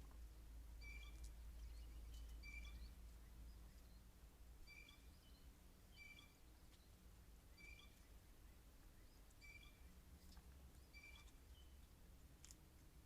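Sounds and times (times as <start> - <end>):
blue jay calling: 0.8 - 4.0, 4.6 - 6.6, 7.5 - 8.2, 9.0 - 11.8.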